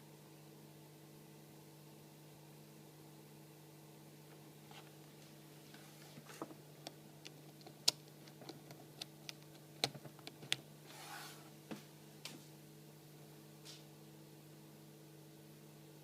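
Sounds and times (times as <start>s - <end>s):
low electrical hum: 0.0s - 16.0s
soft rustle: 10.8s - 11.8s.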